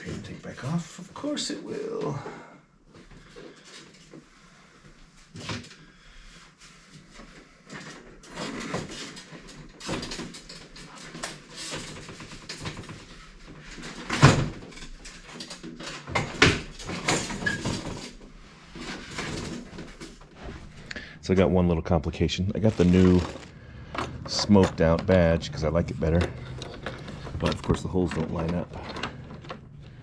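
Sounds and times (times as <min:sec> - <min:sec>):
rustling and clicks: 0:22.6 - 0:30.0.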